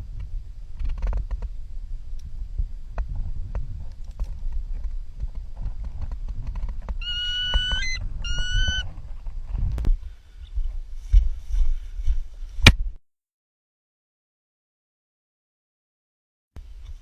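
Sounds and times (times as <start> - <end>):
bird of prey screaming: 7.0 - 8.9.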